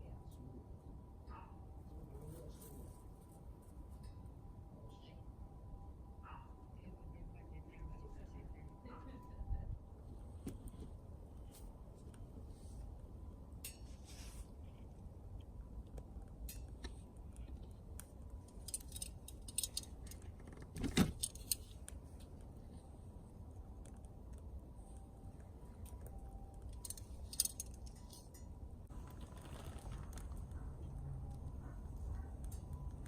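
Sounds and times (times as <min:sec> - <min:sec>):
steady low rumble: 0:21.1 - 0:33.0.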